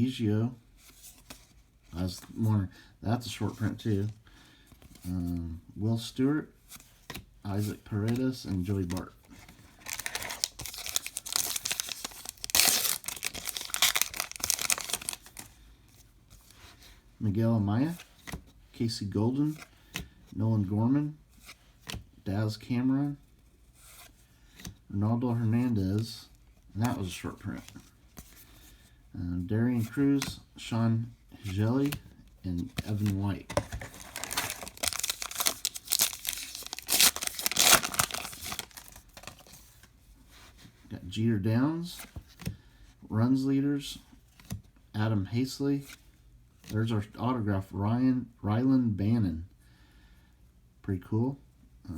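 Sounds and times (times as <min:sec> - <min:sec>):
wrapper tearing and crinkling: 0:09.8 - 0:15.5, 0:32.9 - 0:39.6.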